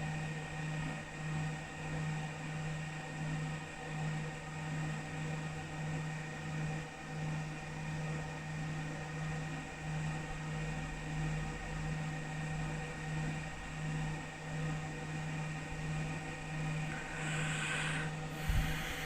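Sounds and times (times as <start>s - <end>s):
machine electrical hum: 15.5s - 19.0s
thin steady whines: 15.7s - 19.0s
faint hiss: 16.8s - 19.0s.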